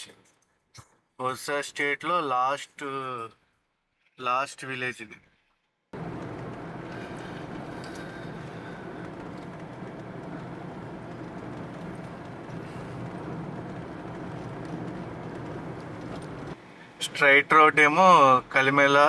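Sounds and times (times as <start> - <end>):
car road and engine noise: 6.0 - 19.0.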